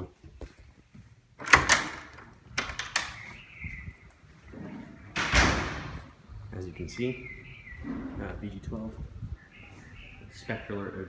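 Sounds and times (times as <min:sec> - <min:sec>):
door latch clicking: 0:01.4 - 0:03.3
door squeaking: 0:01.4 - 0:06.0
door thumping shut: 0:05.1 - 0:06.1.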